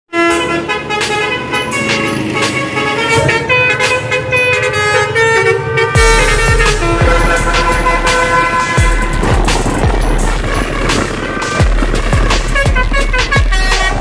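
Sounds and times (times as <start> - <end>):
bus air horn playing melody: 0.1 - 14.0
deep steady bass: 6.0 - 14.0.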